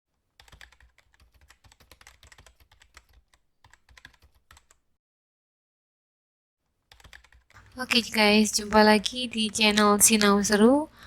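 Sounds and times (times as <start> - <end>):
keyboard typing clicks: 0.4 - 4.8, 6.9 - 10.8.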